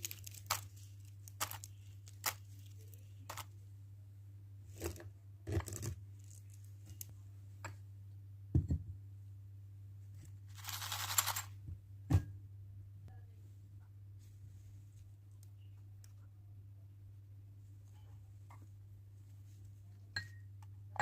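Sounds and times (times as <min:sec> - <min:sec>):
crinkling tearing wrapper: 0:00.0 - 0:03.5
low steady hum: 0:00.0 - 0:21.0.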